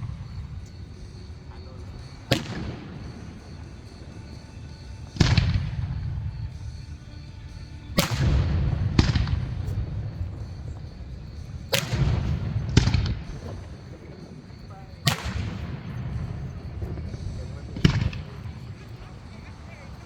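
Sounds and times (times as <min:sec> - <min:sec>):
fireworks booming: 0:01.5 - 0:04.3, 0:08.0 - 0:14.3, 0:15.0 - 0:19.0.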